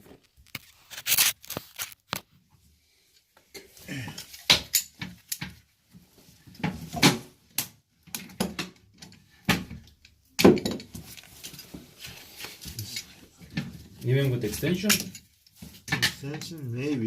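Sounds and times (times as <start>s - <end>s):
metal hand tools clinking: 14.5s - 15.3s.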